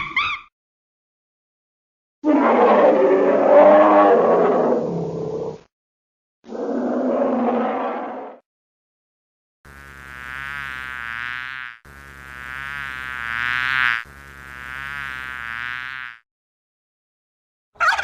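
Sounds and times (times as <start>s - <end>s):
flying insect buzzing: 9.7s - 16.2s.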